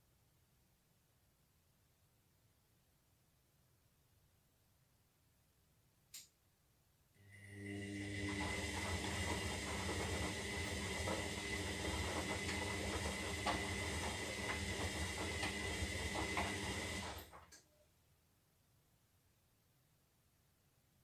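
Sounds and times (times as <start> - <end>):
washing machine humming: 7.2 - 17.6.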